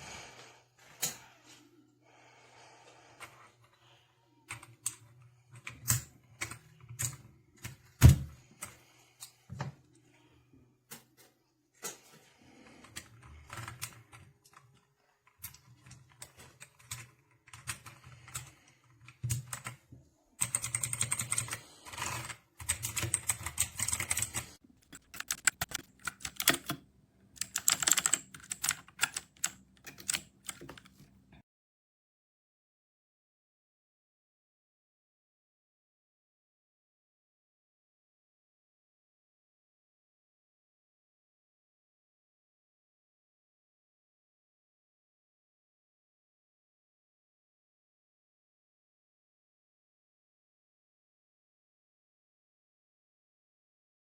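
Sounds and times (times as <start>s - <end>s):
mechanical keyboard typing: 12.8s - 14.7s, 15.3s - 19.8s, 20.4s - 31.1s.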